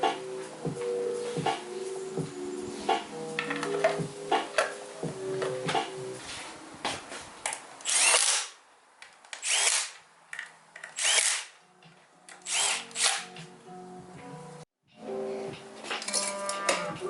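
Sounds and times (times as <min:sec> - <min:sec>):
power drill short bursts: 0:07.9 - 0:08.5, 0:11.0 - 0:11.5, 0:12.5 - 0:13.3.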